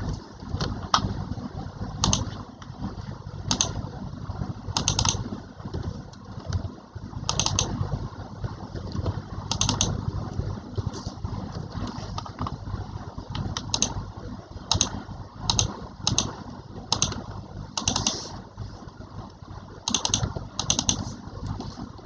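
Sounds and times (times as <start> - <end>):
steady low rumble: 0.0 - 22.0
keyboard keys clicking: 2.0 - 2.7, 3.4 - 3.8, 4.7 - 6.7, 7.3 - 7.8, 8.9 - 10.4, 13.3 - 14.0, 14.7 - 16.3, 16.9 - 17.2, 17.8 - 18.3, 19.9 - 21.6.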